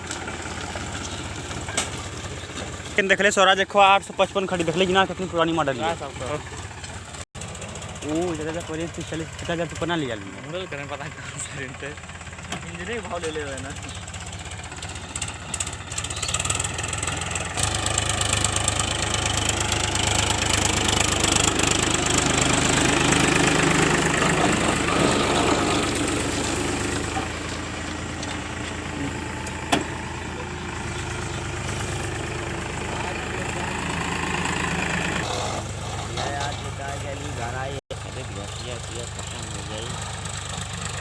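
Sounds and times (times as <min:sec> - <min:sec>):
tractor diesel engine running: 0:00.0 - 0:41.0.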